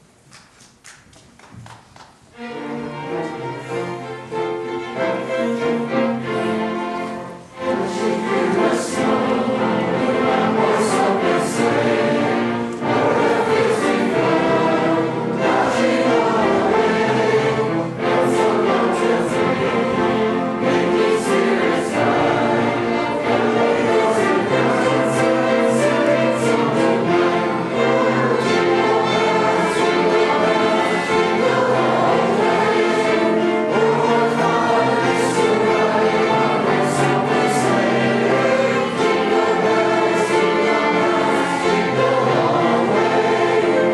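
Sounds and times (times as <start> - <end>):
choir singing with orchestra: 2.4 - 43.9.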